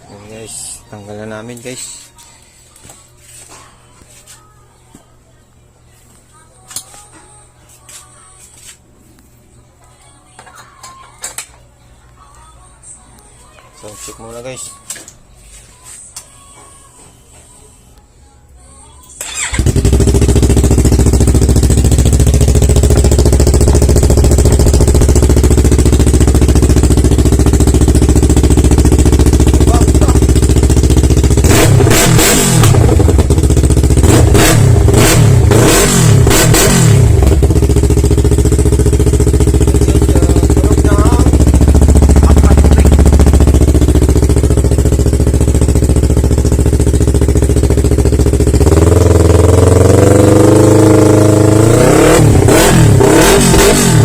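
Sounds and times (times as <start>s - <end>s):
engine revving: 19.2s - 26.5s, 31.2s - 38.9s, 48.5s - 54.0s
motorcycle engine idling: 19.2s - 31.8s, 32.7s - 35.7s, 36.6s - 50.3s.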